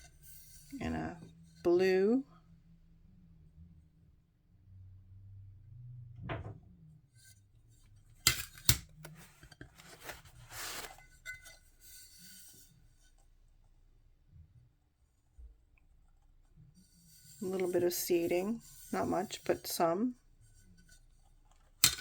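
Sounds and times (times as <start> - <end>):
glass and wrapping rustling: 8.1 - 12.1.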